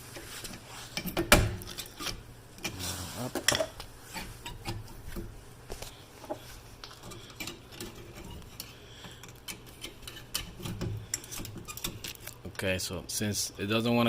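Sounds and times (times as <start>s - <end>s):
screwdriver scraping on metal: 7.0s - 12.3s.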